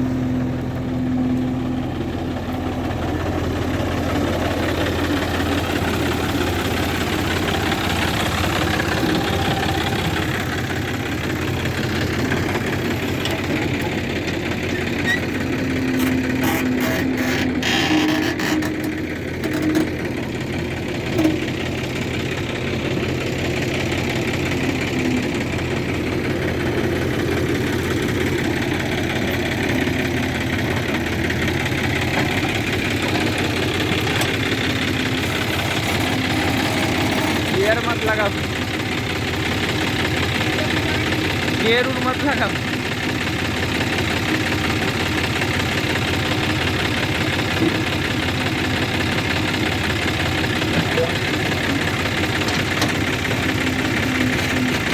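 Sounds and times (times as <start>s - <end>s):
heavy diesel engine running: 0.0s - 54.9s.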